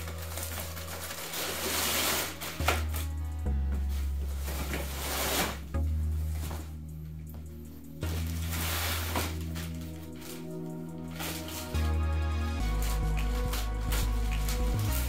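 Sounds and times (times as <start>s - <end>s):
rustling and scraping: 0.0s - 12.0s
background music with bass line: 0.0s - 15.0s.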